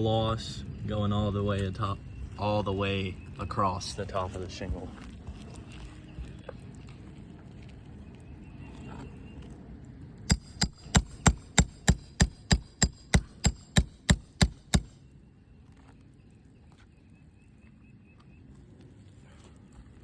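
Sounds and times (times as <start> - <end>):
hammer striking metal ringing: 10.3 - 15.0.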